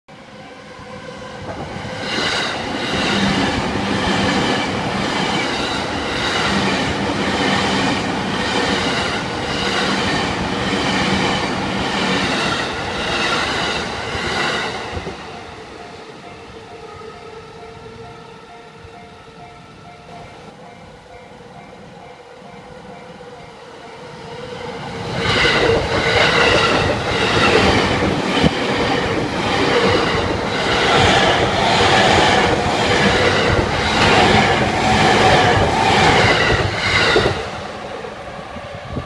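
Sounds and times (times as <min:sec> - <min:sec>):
electric train passing: 0:00.1 - 0:39.0
crossing warning bell ringing: 0:15.2 - 0:24.6.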